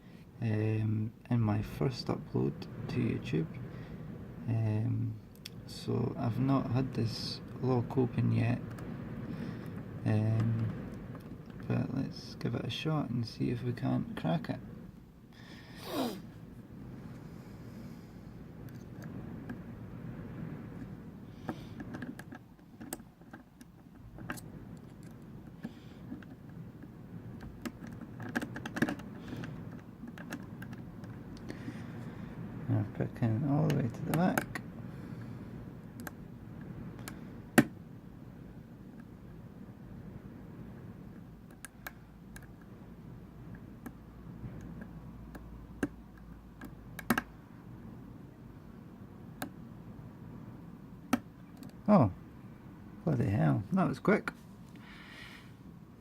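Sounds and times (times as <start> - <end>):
faint low hum: 0.0 - 56.0
lock pick clicking and scraping: 27.4 - 31.1.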